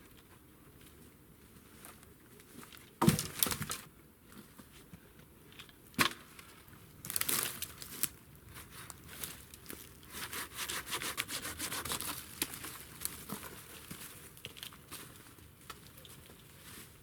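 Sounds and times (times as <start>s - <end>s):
dry wood cracking and knocking: 3.0s - 3.9s.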